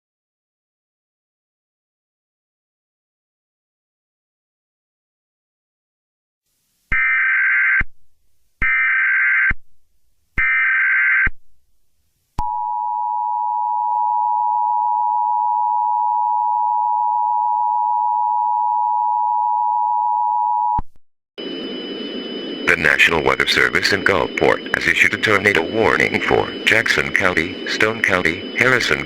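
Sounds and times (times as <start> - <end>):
two-tone attention signal: 21.4 - 29.0
warbling digital data tones: 21.4 - 29.0.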